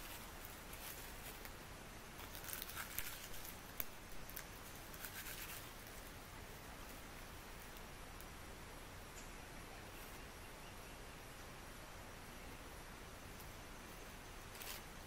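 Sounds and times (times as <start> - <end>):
kindling crackling: 0.0 - 8.5
faint hiss: 0.0 - 15.0
paper rustling: 2.2 - 3.6.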